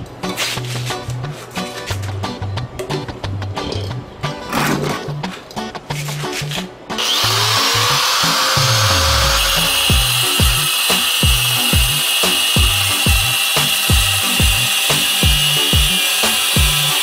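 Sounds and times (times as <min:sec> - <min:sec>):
background music with steady beat: 0:00.0 - 0:17.0
electric motor whine: 0:07.0 - 0:17.0.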